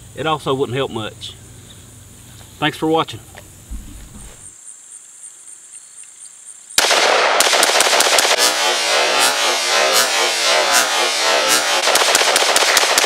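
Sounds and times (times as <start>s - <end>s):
rifle rapid fire: 6.8s - 13.0s.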